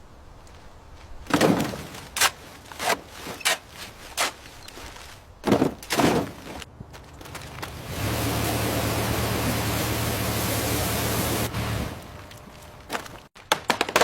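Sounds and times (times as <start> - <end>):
thumps and knocks: 1.3 - 4.4, 5.4 - 6.6.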